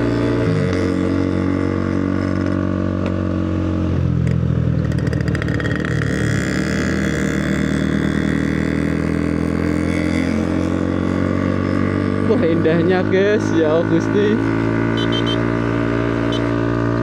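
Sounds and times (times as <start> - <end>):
motorcycle engine running: 0.0 - 17.0.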